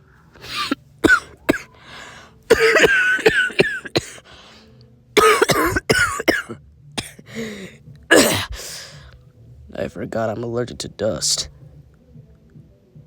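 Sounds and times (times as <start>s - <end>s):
person coughing: 0.4s - 1.7s, 2.5s - 4.2s, 5.2s - 8.8s.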